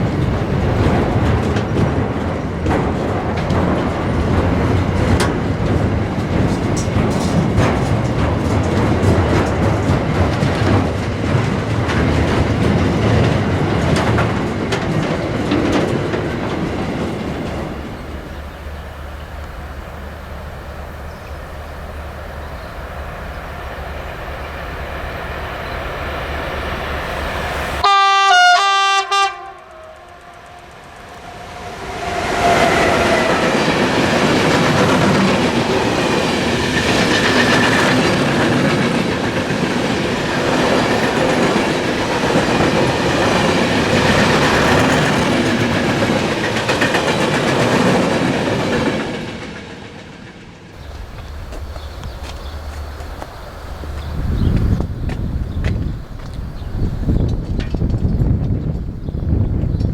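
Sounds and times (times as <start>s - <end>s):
train wheels clattering over rails: 0.0s - 27.8s, 29.2s - 59.9s
train horn blasts: 27.8s - 33.6s.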